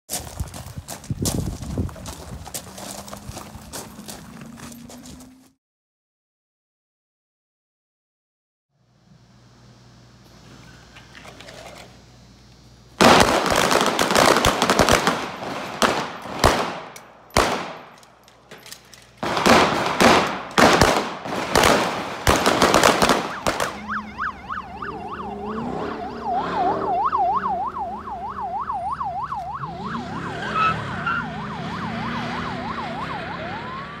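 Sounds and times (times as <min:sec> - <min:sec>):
car running: 0:00.7 - 0:05.6, 0:21.9 - 0:34.0
rapid gunfire: 0:13.0 - 0:18.0, 0:19.2 - 0:23.9
police siren on yelp: 0:22.8 - 0:34.0.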